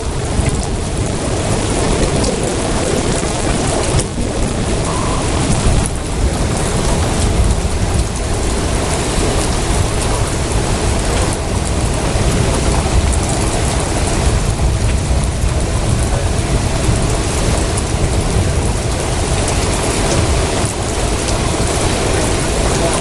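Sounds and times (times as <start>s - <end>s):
deep thunder rumble: 0.0s - 23.0s
heavy rain: 0.0s - 23.0s
wind: 0.0s - 23.0s.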